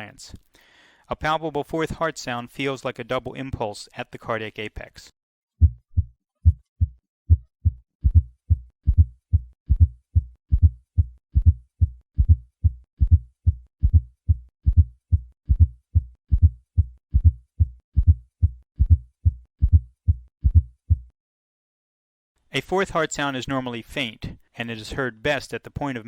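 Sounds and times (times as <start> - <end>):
heartbeat through stethoscope: 5.6 - 21.1.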